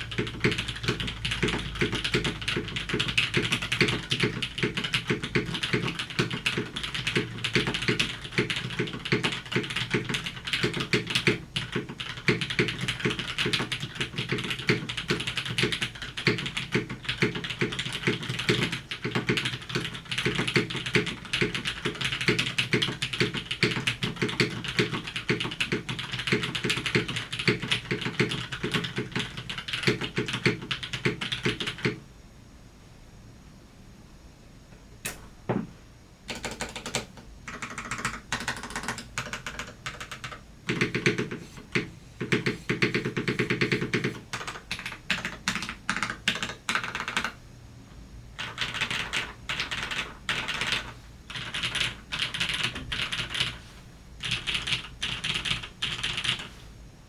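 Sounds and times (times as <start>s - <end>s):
fast typing on mechanical keyboard: 0.0s - 32.0s, 36.3s - 47.4s, 48.4s - 56.6s.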